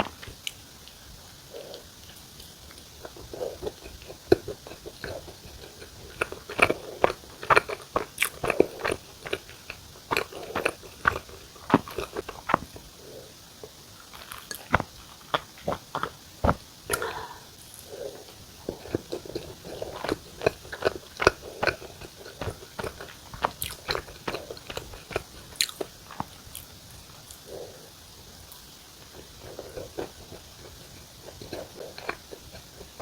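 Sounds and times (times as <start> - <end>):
wet chewing mouth noises: 0.0 - 33.0
sharp crunches: 18.7 - 26.7.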